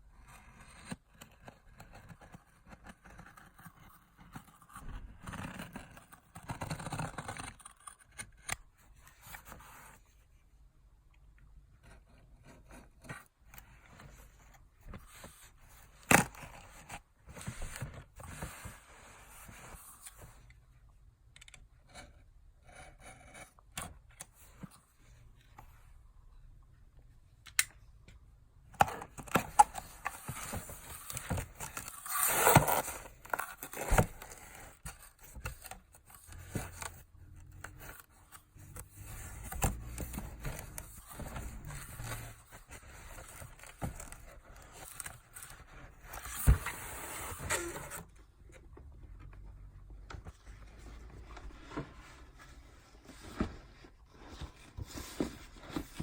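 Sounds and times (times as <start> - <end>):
packaging scraping and rustling: 28.9 - 48.1.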